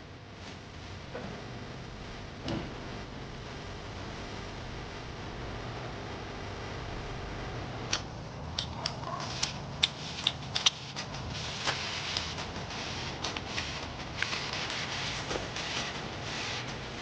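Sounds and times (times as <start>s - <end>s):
steady hiss: 6.7s - 17.0s.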